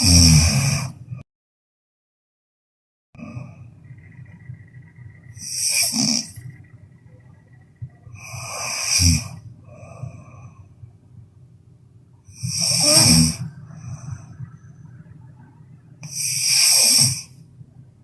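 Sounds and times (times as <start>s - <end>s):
person snoring loudly: 0.0s - 1.0s, 5.4s - 6.4s, 8.2s - 10.0s, 12.3s - 14.3s, 16.0s - 17.4s
quiet breathing: 3.2s - 18.0s.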